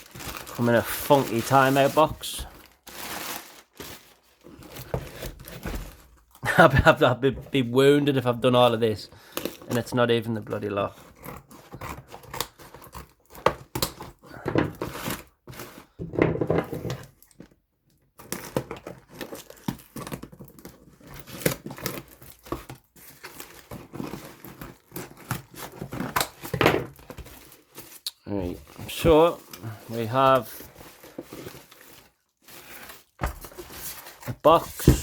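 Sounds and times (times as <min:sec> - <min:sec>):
packaging crumpled and torn: 0:00.0 - 0:06.4, 0:18.2 - 0:35.0.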